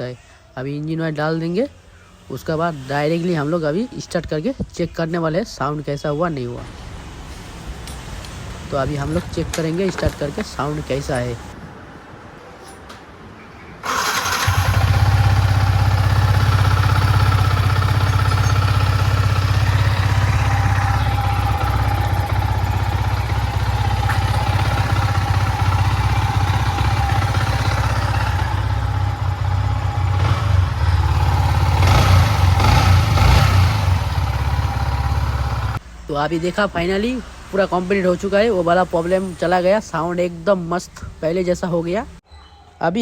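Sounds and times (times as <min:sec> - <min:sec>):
motorcycle engine starting and idling: 0:06.9 - 0:11.6, 0:13.0 - 0:35.9.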